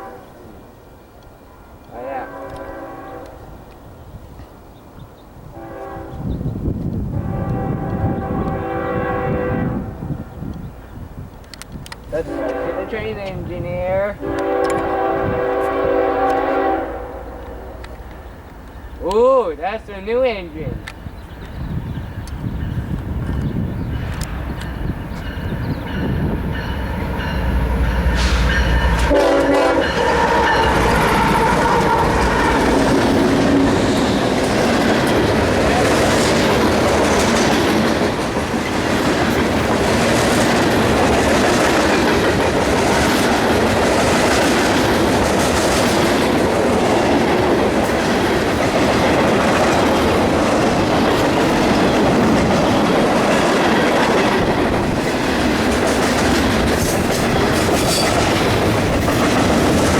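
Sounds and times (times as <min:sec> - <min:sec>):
train horn: 0:00.0 - 0:00.6, 0:02.0 - 0:03.4, 0:05.5 - 0:06.4, 0:07.1 - 0:10.1, 0:12.2 - 0:13.3, 0:14.2 - 0:17.8, 0:26.6 - 0:34.6
diesel locomotive rumbling: 0:05.6 - 0:59.9
train wheels on rails clacking: 0:20.7 - 0:59.9.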